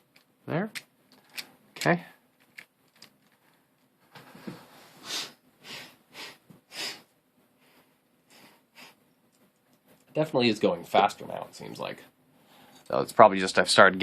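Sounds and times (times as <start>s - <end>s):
person sniffling: 5.0s - 9.0s.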